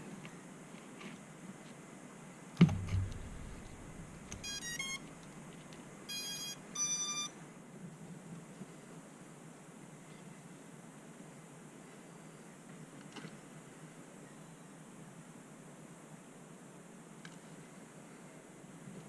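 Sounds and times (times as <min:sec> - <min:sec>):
sharp thump: 0:02.6 - 0:05.4
electronic startup beeps: 0:04.3 - 0:05.1.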